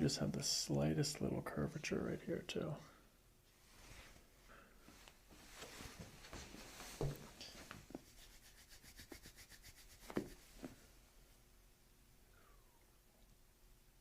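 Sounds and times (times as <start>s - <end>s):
rubbing and rustling handling noise: 3.4s - 11.1s.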